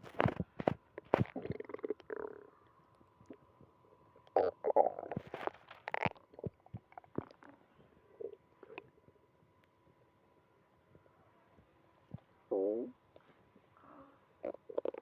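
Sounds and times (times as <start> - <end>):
stomach growling and gurgling: 0.0 - 3.6, 4.2 - 9.1, 13.8 - 15.0.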